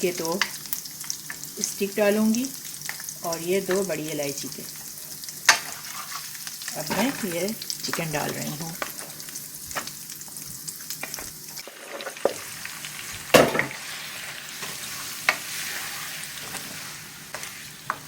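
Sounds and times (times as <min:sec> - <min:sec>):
chicken sizzling in hot oil: 0:00.0 - 0:18.0
utensil knocking against pan: 0:13.4 - 0:13.8.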